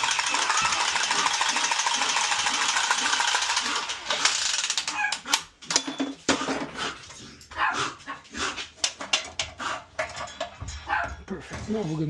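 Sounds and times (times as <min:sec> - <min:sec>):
dog barking: 0:07.6 - 0:08.5, 0:10.9 - 0:11.2.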